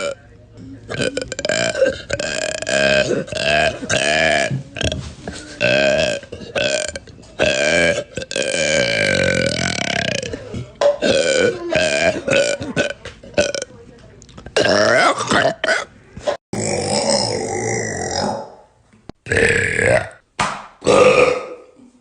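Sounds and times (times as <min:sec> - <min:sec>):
women burping loudly: 0:00.9 - 0:13.7, 0:14.6 - 0:15.9, 0:16.5 - 0:18.6, 0:19.2 - 0:20.2, 0:20.8 - 0:21.9.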